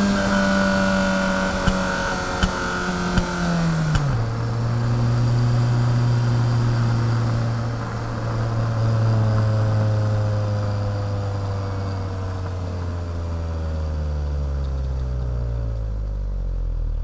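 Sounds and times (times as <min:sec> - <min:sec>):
sports car engine: 0:00.0 - 0:17.0
sharp clicks: 0:01.5 - 0:04.3.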